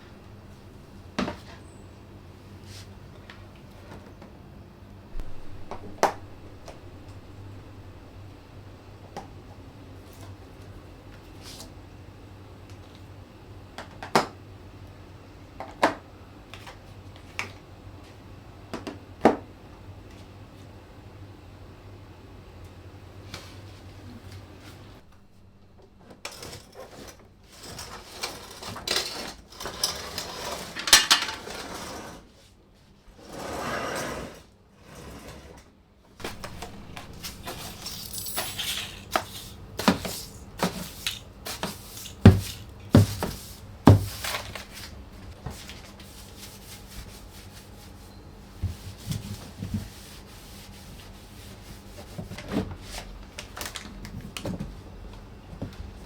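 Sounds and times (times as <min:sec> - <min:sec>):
dishes and cutlery clinking: 0:36.3 - 0:43.3
dishes scraping: 0:36.3 - 0:44.7.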